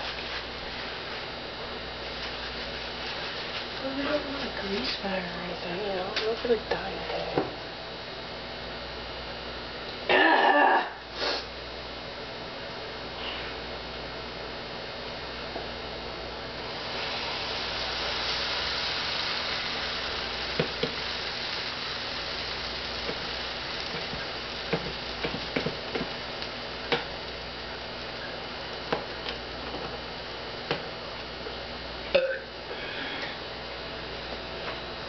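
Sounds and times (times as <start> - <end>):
pancakes sizzling in a pan: 2.1 - 5.0, 16.6 - 29.2.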